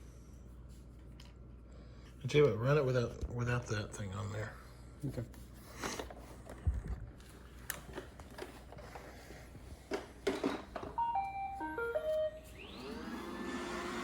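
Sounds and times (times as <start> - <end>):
electronic start-up beeps: 11.0 - 13.0
vacuum motor whine: 11.0 - 14.0.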